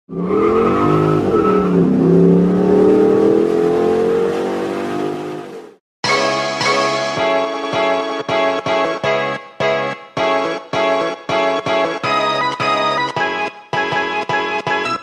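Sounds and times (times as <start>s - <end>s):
car engine revving: 0.1s - 5.8s.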